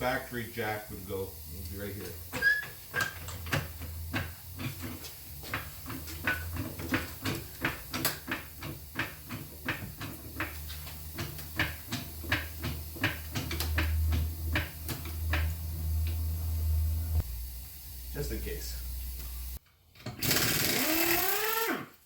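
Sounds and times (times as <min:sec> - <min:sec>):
low steady hum: 0:13.2 - 0:19.6.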